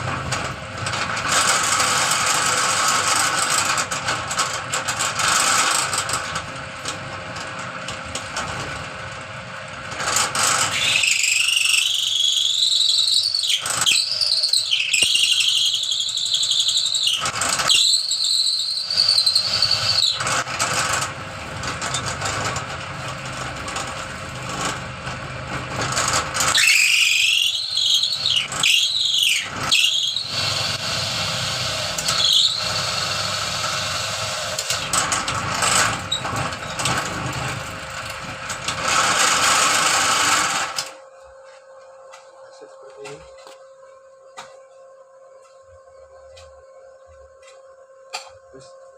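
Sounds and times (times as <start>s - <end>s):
high squealing whine of cutter: 0.0s - 6.5s, 9.9s - 24.9s, 25.7s - 41.1s.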